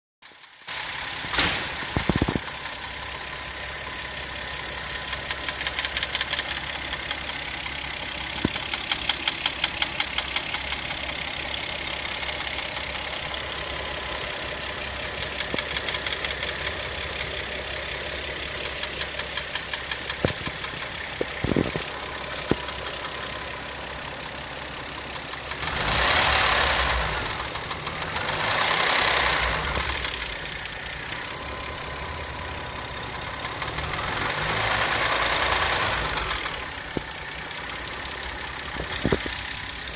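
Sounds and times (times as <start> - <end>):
car engine idling: 0.2 - 39.9
engine revving: 25.3 - 39.9.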